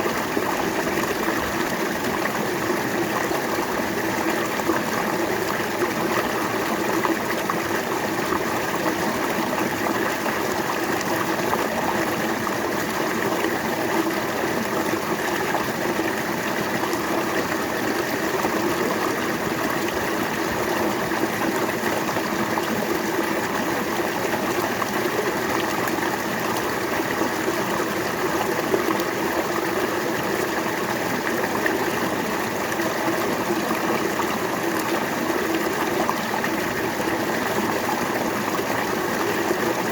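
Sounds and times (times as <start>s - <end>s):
river water flowing over rocks: 0.0s - 39.9s.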